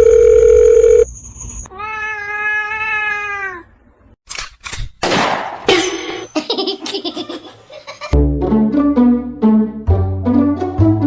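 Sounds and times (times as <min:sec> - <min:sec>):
cat meowing: 0:01.7 - 0:03.8.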